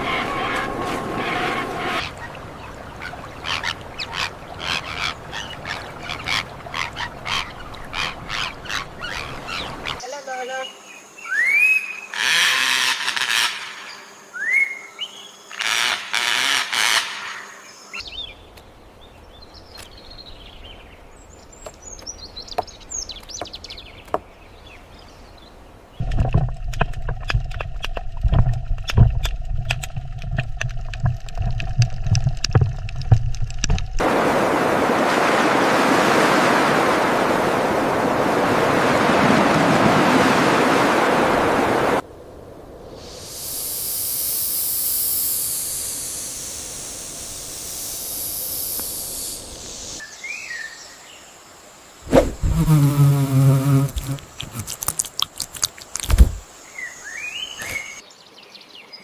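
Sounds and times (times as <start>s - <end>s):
loud whistled calls: 11.2s - 14.9s
low hum: 26.0s - 34.0s
steady hiss: 42.0s - 50.1s.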